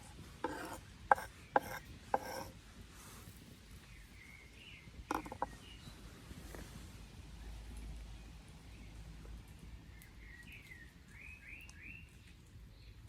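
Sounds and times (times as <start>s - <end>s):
scrapes and knocks: 0.0s - 2.5s, 5.1s - 5.6s.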